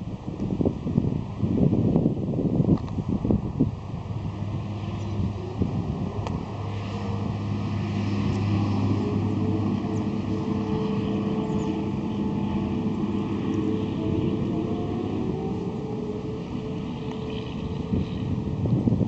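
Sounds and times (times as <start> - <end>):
steady low hum: 0.0 - 19.0
wind on microphone: 0.0 - 19.0
distant warning siren: 3.9 - 19.0.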